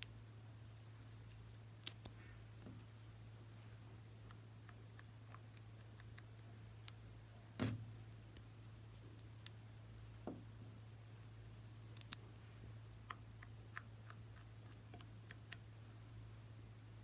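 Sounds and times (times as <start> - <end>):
low steady hum: 0.0 - 17.0
faint clicks of small objects: 11.9 - 12.2.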